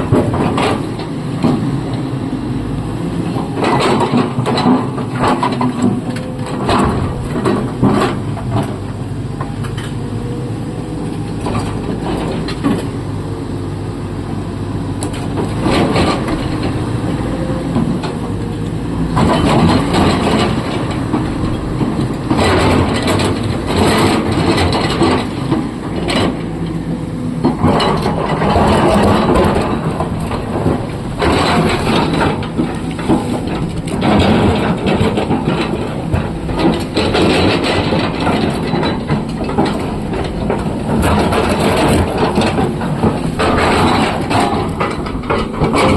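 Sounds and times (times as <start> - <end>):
excavator diesel engine running: 0.0 - 45.9
rock crunching and clattering: 27.5 - 45.9.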